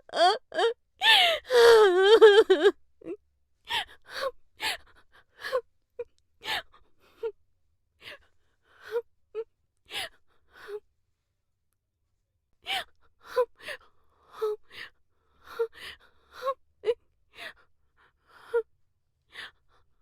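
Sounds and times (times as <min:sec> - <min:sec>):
woman crying: 0:00.0 - 0:02.7.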